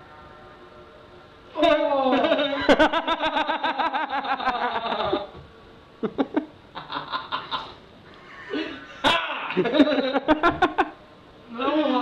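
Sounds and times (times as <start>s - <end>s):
men laughing: 1.6s - 5.4s, 6.0s - 11.0s.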